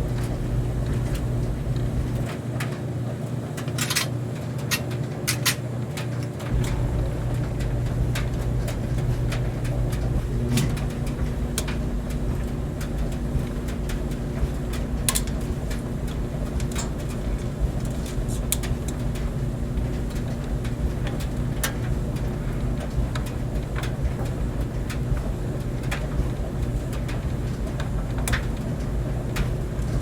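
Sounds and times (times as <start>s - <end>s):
clothes dryer running: 0.0s - 30.0s
sharp clicks and light knocks: 3.6s - 19.3s.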